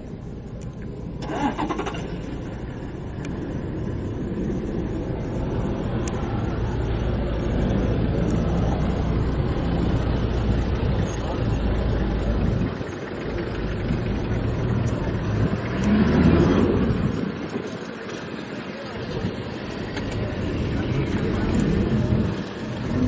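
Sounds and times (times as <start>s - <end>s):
vehicle engine running: 0.0s - 23.0s.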